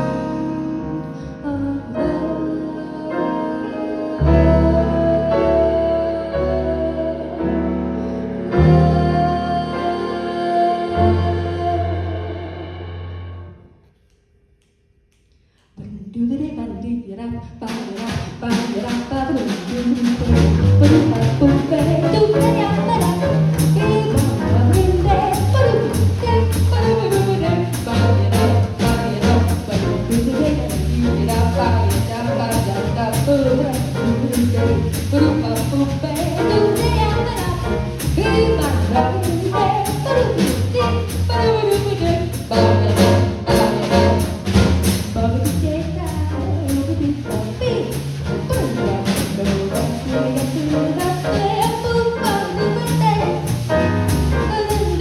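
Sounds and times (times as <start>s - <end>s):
drums swing beat: 0.0s - 0.8s, 17.5s - 55.0s
jazz melody line: 0.0s - 13.7s, 18.0s - 55.0s
walking bass line: 19.7s - 55.0s.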